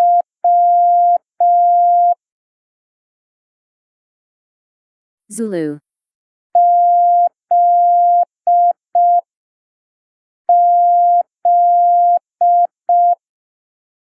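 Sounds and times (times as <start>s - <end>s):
morse code beeps: 0.0s - 2.2s, 10.5s - 13.2s.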